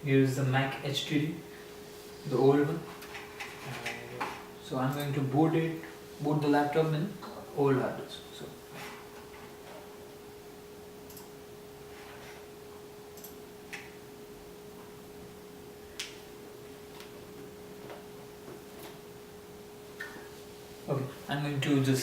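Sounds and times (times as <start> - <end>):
faint steady whine: 0.0 - 22.0
soft clicks: 11.1 - 11.3, 13.2 - 13.9.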